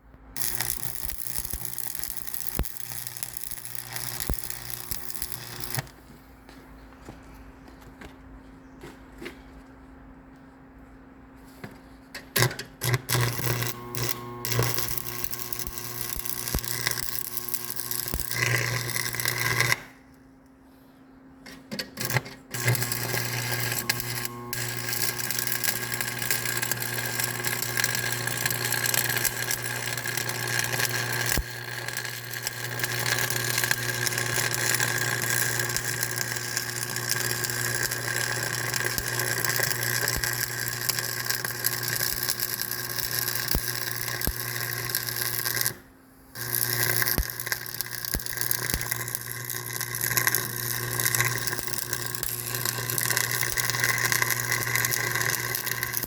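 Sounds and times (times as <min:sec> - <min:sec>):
machine motor humming: 0:12.9 - 0:19.9, 0:22.0 - 0:45.7.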